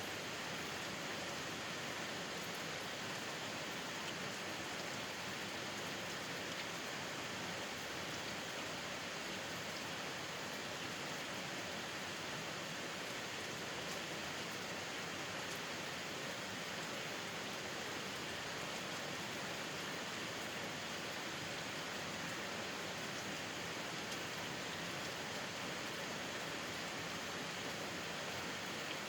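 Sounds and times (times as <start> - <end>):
steady rain hiss: 0.0 - 29.0
faint raindrop ticks: 15.3 - 15.7, 24.0 - 24.4.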